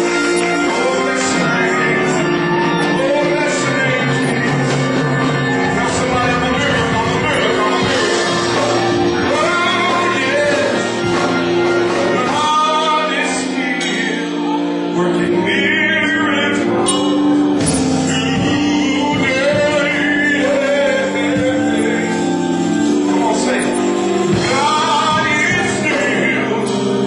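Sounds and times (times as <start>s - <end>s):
man singing gospel: 0.0s - 27.0s
sustained chords: 0.0s - 27.0s.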